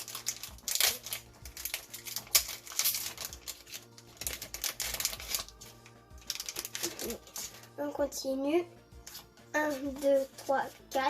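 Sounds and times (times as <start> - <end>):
foil pack crinkling: 0.0 - 7.7.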